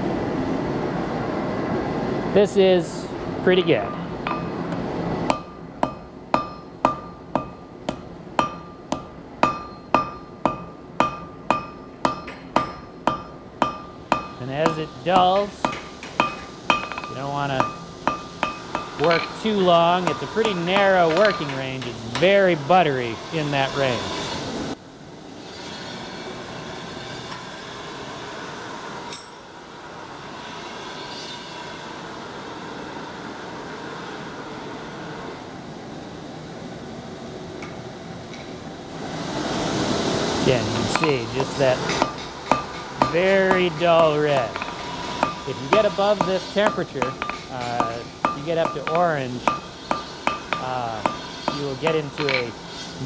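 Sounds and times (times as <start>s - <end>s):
metallic ring of anvil: 3.8s - 22.3s, 29.1s - 29.5s, 40.7s - 53.0s
hammer blows on anvil: 3.8s - 24.3s, 40.5s - 53.0s
forge rushing noise: 39.0s - 53.0s.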